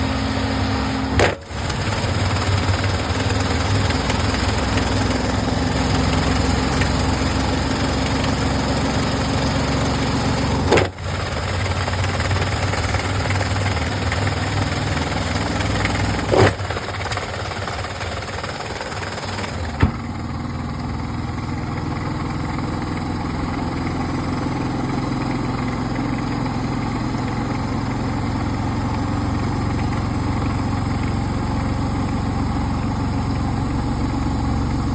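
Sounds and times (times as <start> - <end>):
motor hum and drum whir: 0.0 - 26.3
washing machine running: 0.9 - 33.3.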